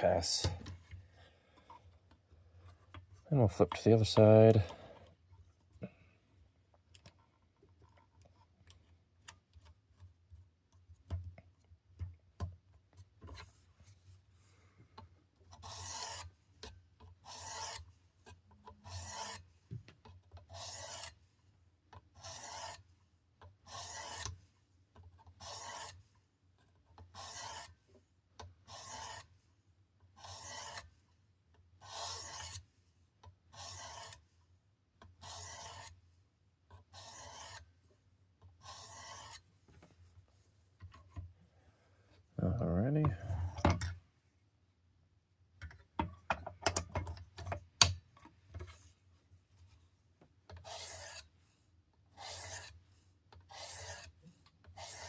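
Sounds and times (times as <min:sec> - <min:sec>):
knife scraping on sharpening stone: 0:15.6 - 0:16.2, 0:17.3 - 0:17.8, 0:18.8 - 0:19.4, 0:20.6 - 0:21.1, 0:22.2 - 0:22.8, 0:25.4 - 0:26.0, 0:27.2 - 0:27.7, 0:28.7 - 0:29.2, 0:30.2 - 0:30.8, 0:31.8 - 0:32.6, 0:33.6 - 0:34.2, 0:35.2 - 0:36.0, 0:36.9 - 0:37.6, 0:38.6 - 0:39.4, 0:50.6 - 0:51.3, 0:52.2 - 0:52.8, 0:53.5 - 0:54.2, 0:54.8 - 0:55.0.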